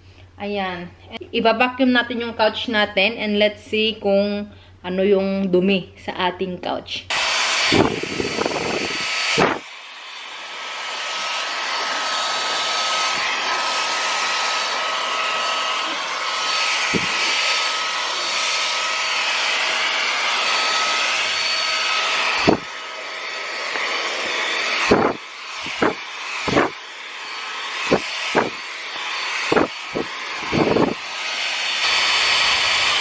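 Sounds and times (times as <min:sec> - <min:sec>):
stick vacuum whining: 0:07.1 - 0:33.0.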